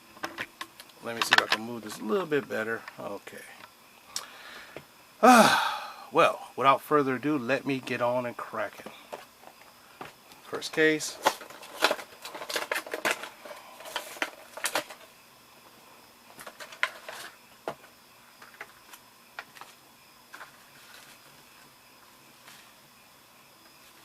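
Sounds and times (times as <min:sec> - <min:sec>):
packaging crackling and crinkling: 0:11.2 - 0:15.1.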